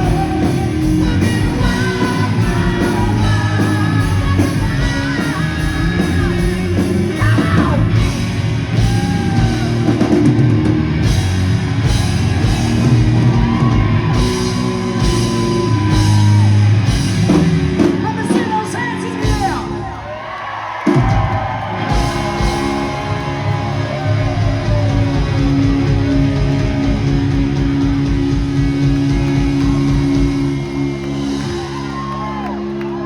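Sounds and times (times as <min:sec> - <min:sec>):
singer: 0:00.0 - 0:09.8
drums and cymbals: 0:00.0 - 0:19.9, 0:20.8 - 0:32.2
electric guitar: 0:00.0 - 0:20.2, 0:20.9 - 0:33.0.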